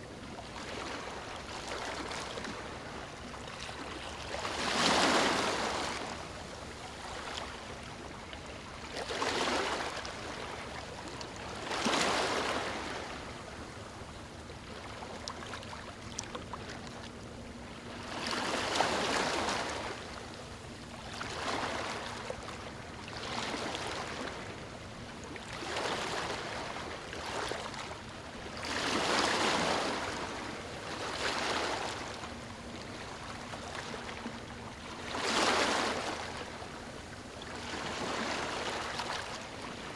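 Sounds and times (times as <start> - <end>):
ocean waves breaking on beach: 4.4 - 7.6.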